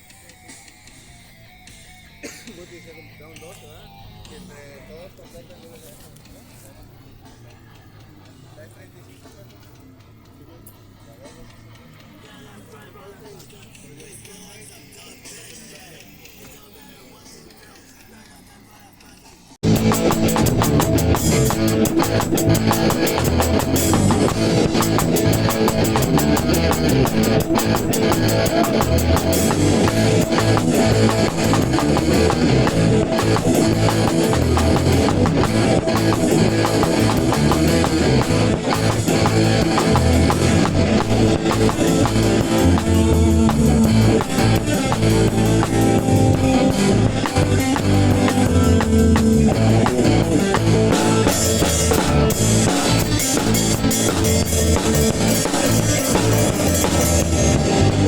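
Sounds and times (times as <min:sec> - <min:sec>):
guitar: 0:00.0 - 0:58.0
drum kit fast beat: 0:19.6 - 0:58.0.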